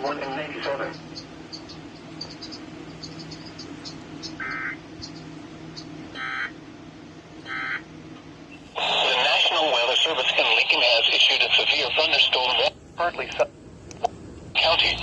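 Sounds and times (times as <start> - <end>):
low steady hum: 0.0 - 15.0
faint high chirping: 0.9 - 6.0.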